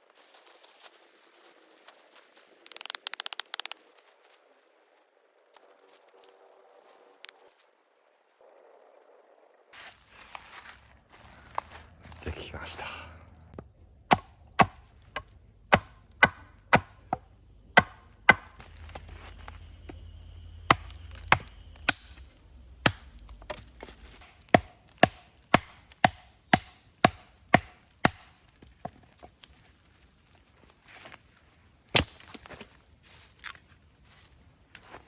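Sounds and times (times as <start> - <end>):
firewood chopping knocks: 14.1 - 19.2, 20.7 - 29.0.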